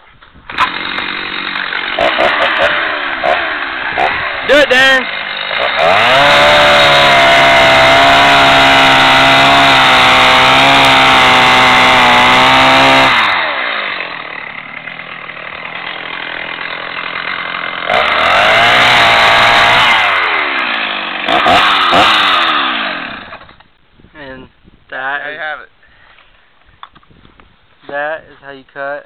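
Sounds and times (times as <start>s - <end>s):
chainsaw cutting through board: 0.5s - 23.7s
chainsaw revving and idling: 0.5s - 23.7s.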